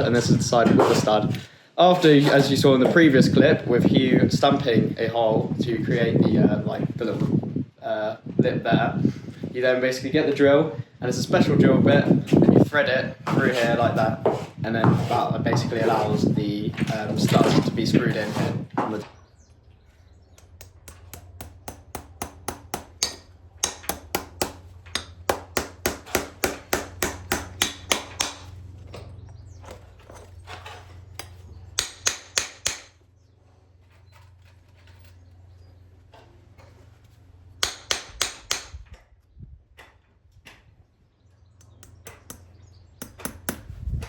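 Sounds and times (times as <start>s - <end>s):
steady low hum: 2.4s - 39.8s
hammer striking steel: 20.4s - 28.5s, 31.2s - 33.0s, 37.6s - 38.8s.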